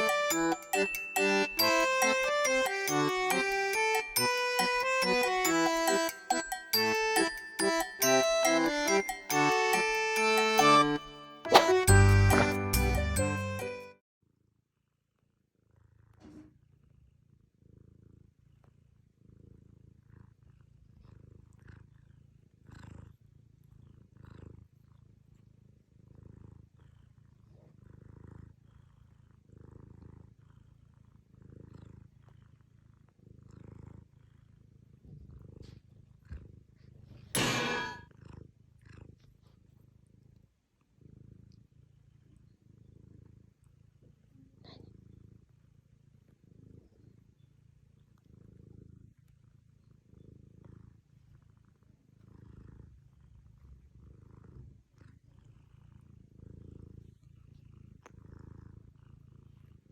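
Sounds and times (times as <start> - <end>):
cat purring: 14.8 - 37.3, 37.9 - 59.9.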